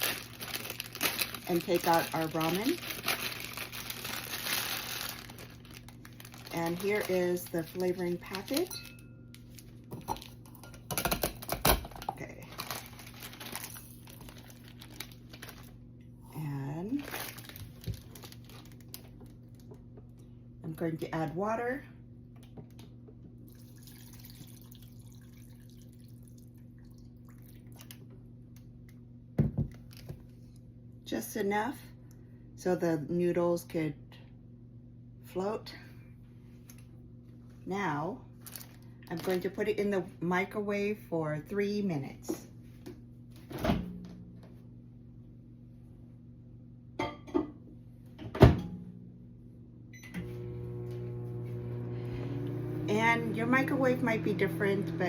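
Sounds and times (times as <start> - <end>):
water trickling into bowl: 23.5 - 27.9
microwave humming: 48.0 - 55.0.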